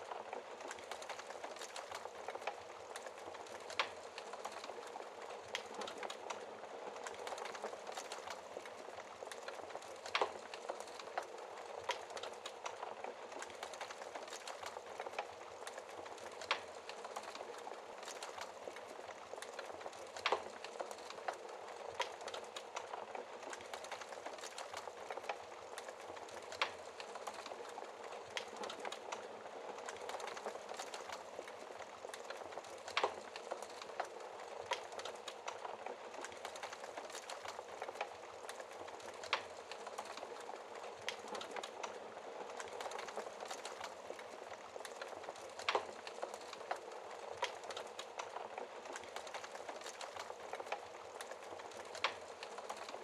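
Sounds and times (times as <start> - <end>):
fire popping: 0.0 - 53.0
wood fire crackling: 0.0 - 53.0.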